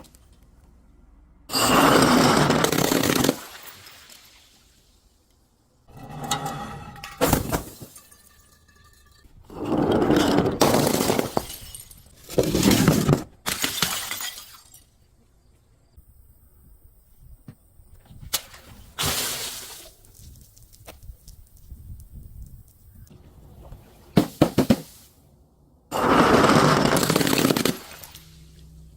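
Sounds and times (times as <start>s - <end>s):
glass bottles shattering: 1.5s - 4.5s, 6.0s - 15.0s.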